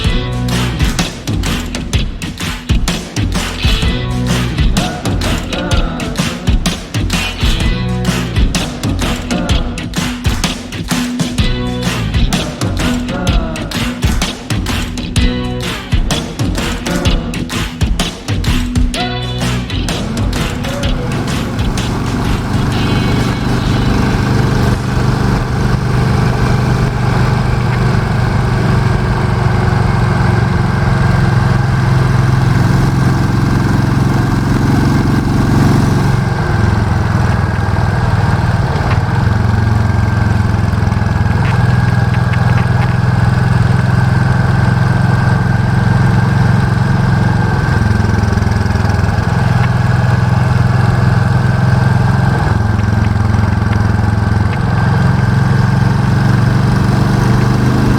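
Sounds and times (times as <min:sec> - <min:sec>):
motorcycle engine exhaust note: 0:19.9 - 0:57.9.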